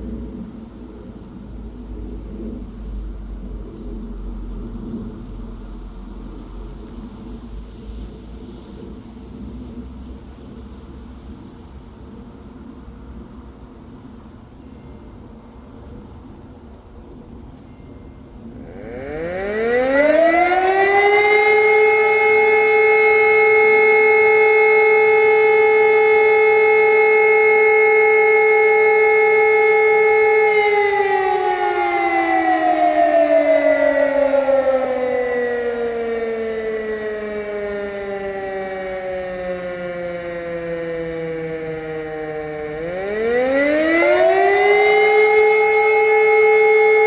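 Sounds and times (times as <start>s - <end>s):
electronic siren: 18.2s - 47.0s
electromechanical siren wailing: 18.3s - 47.0s.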